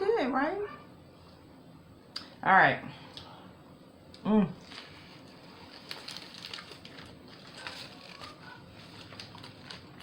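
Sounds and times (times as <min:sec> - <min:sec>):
sandwich chewing with crunches: 0:04.6 - 0:10.0.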